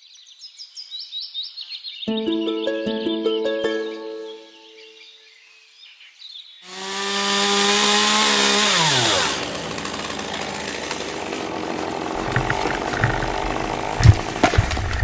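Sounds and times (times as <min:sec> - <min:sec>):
chainsaw running: 0:06.7 - 0:15.0.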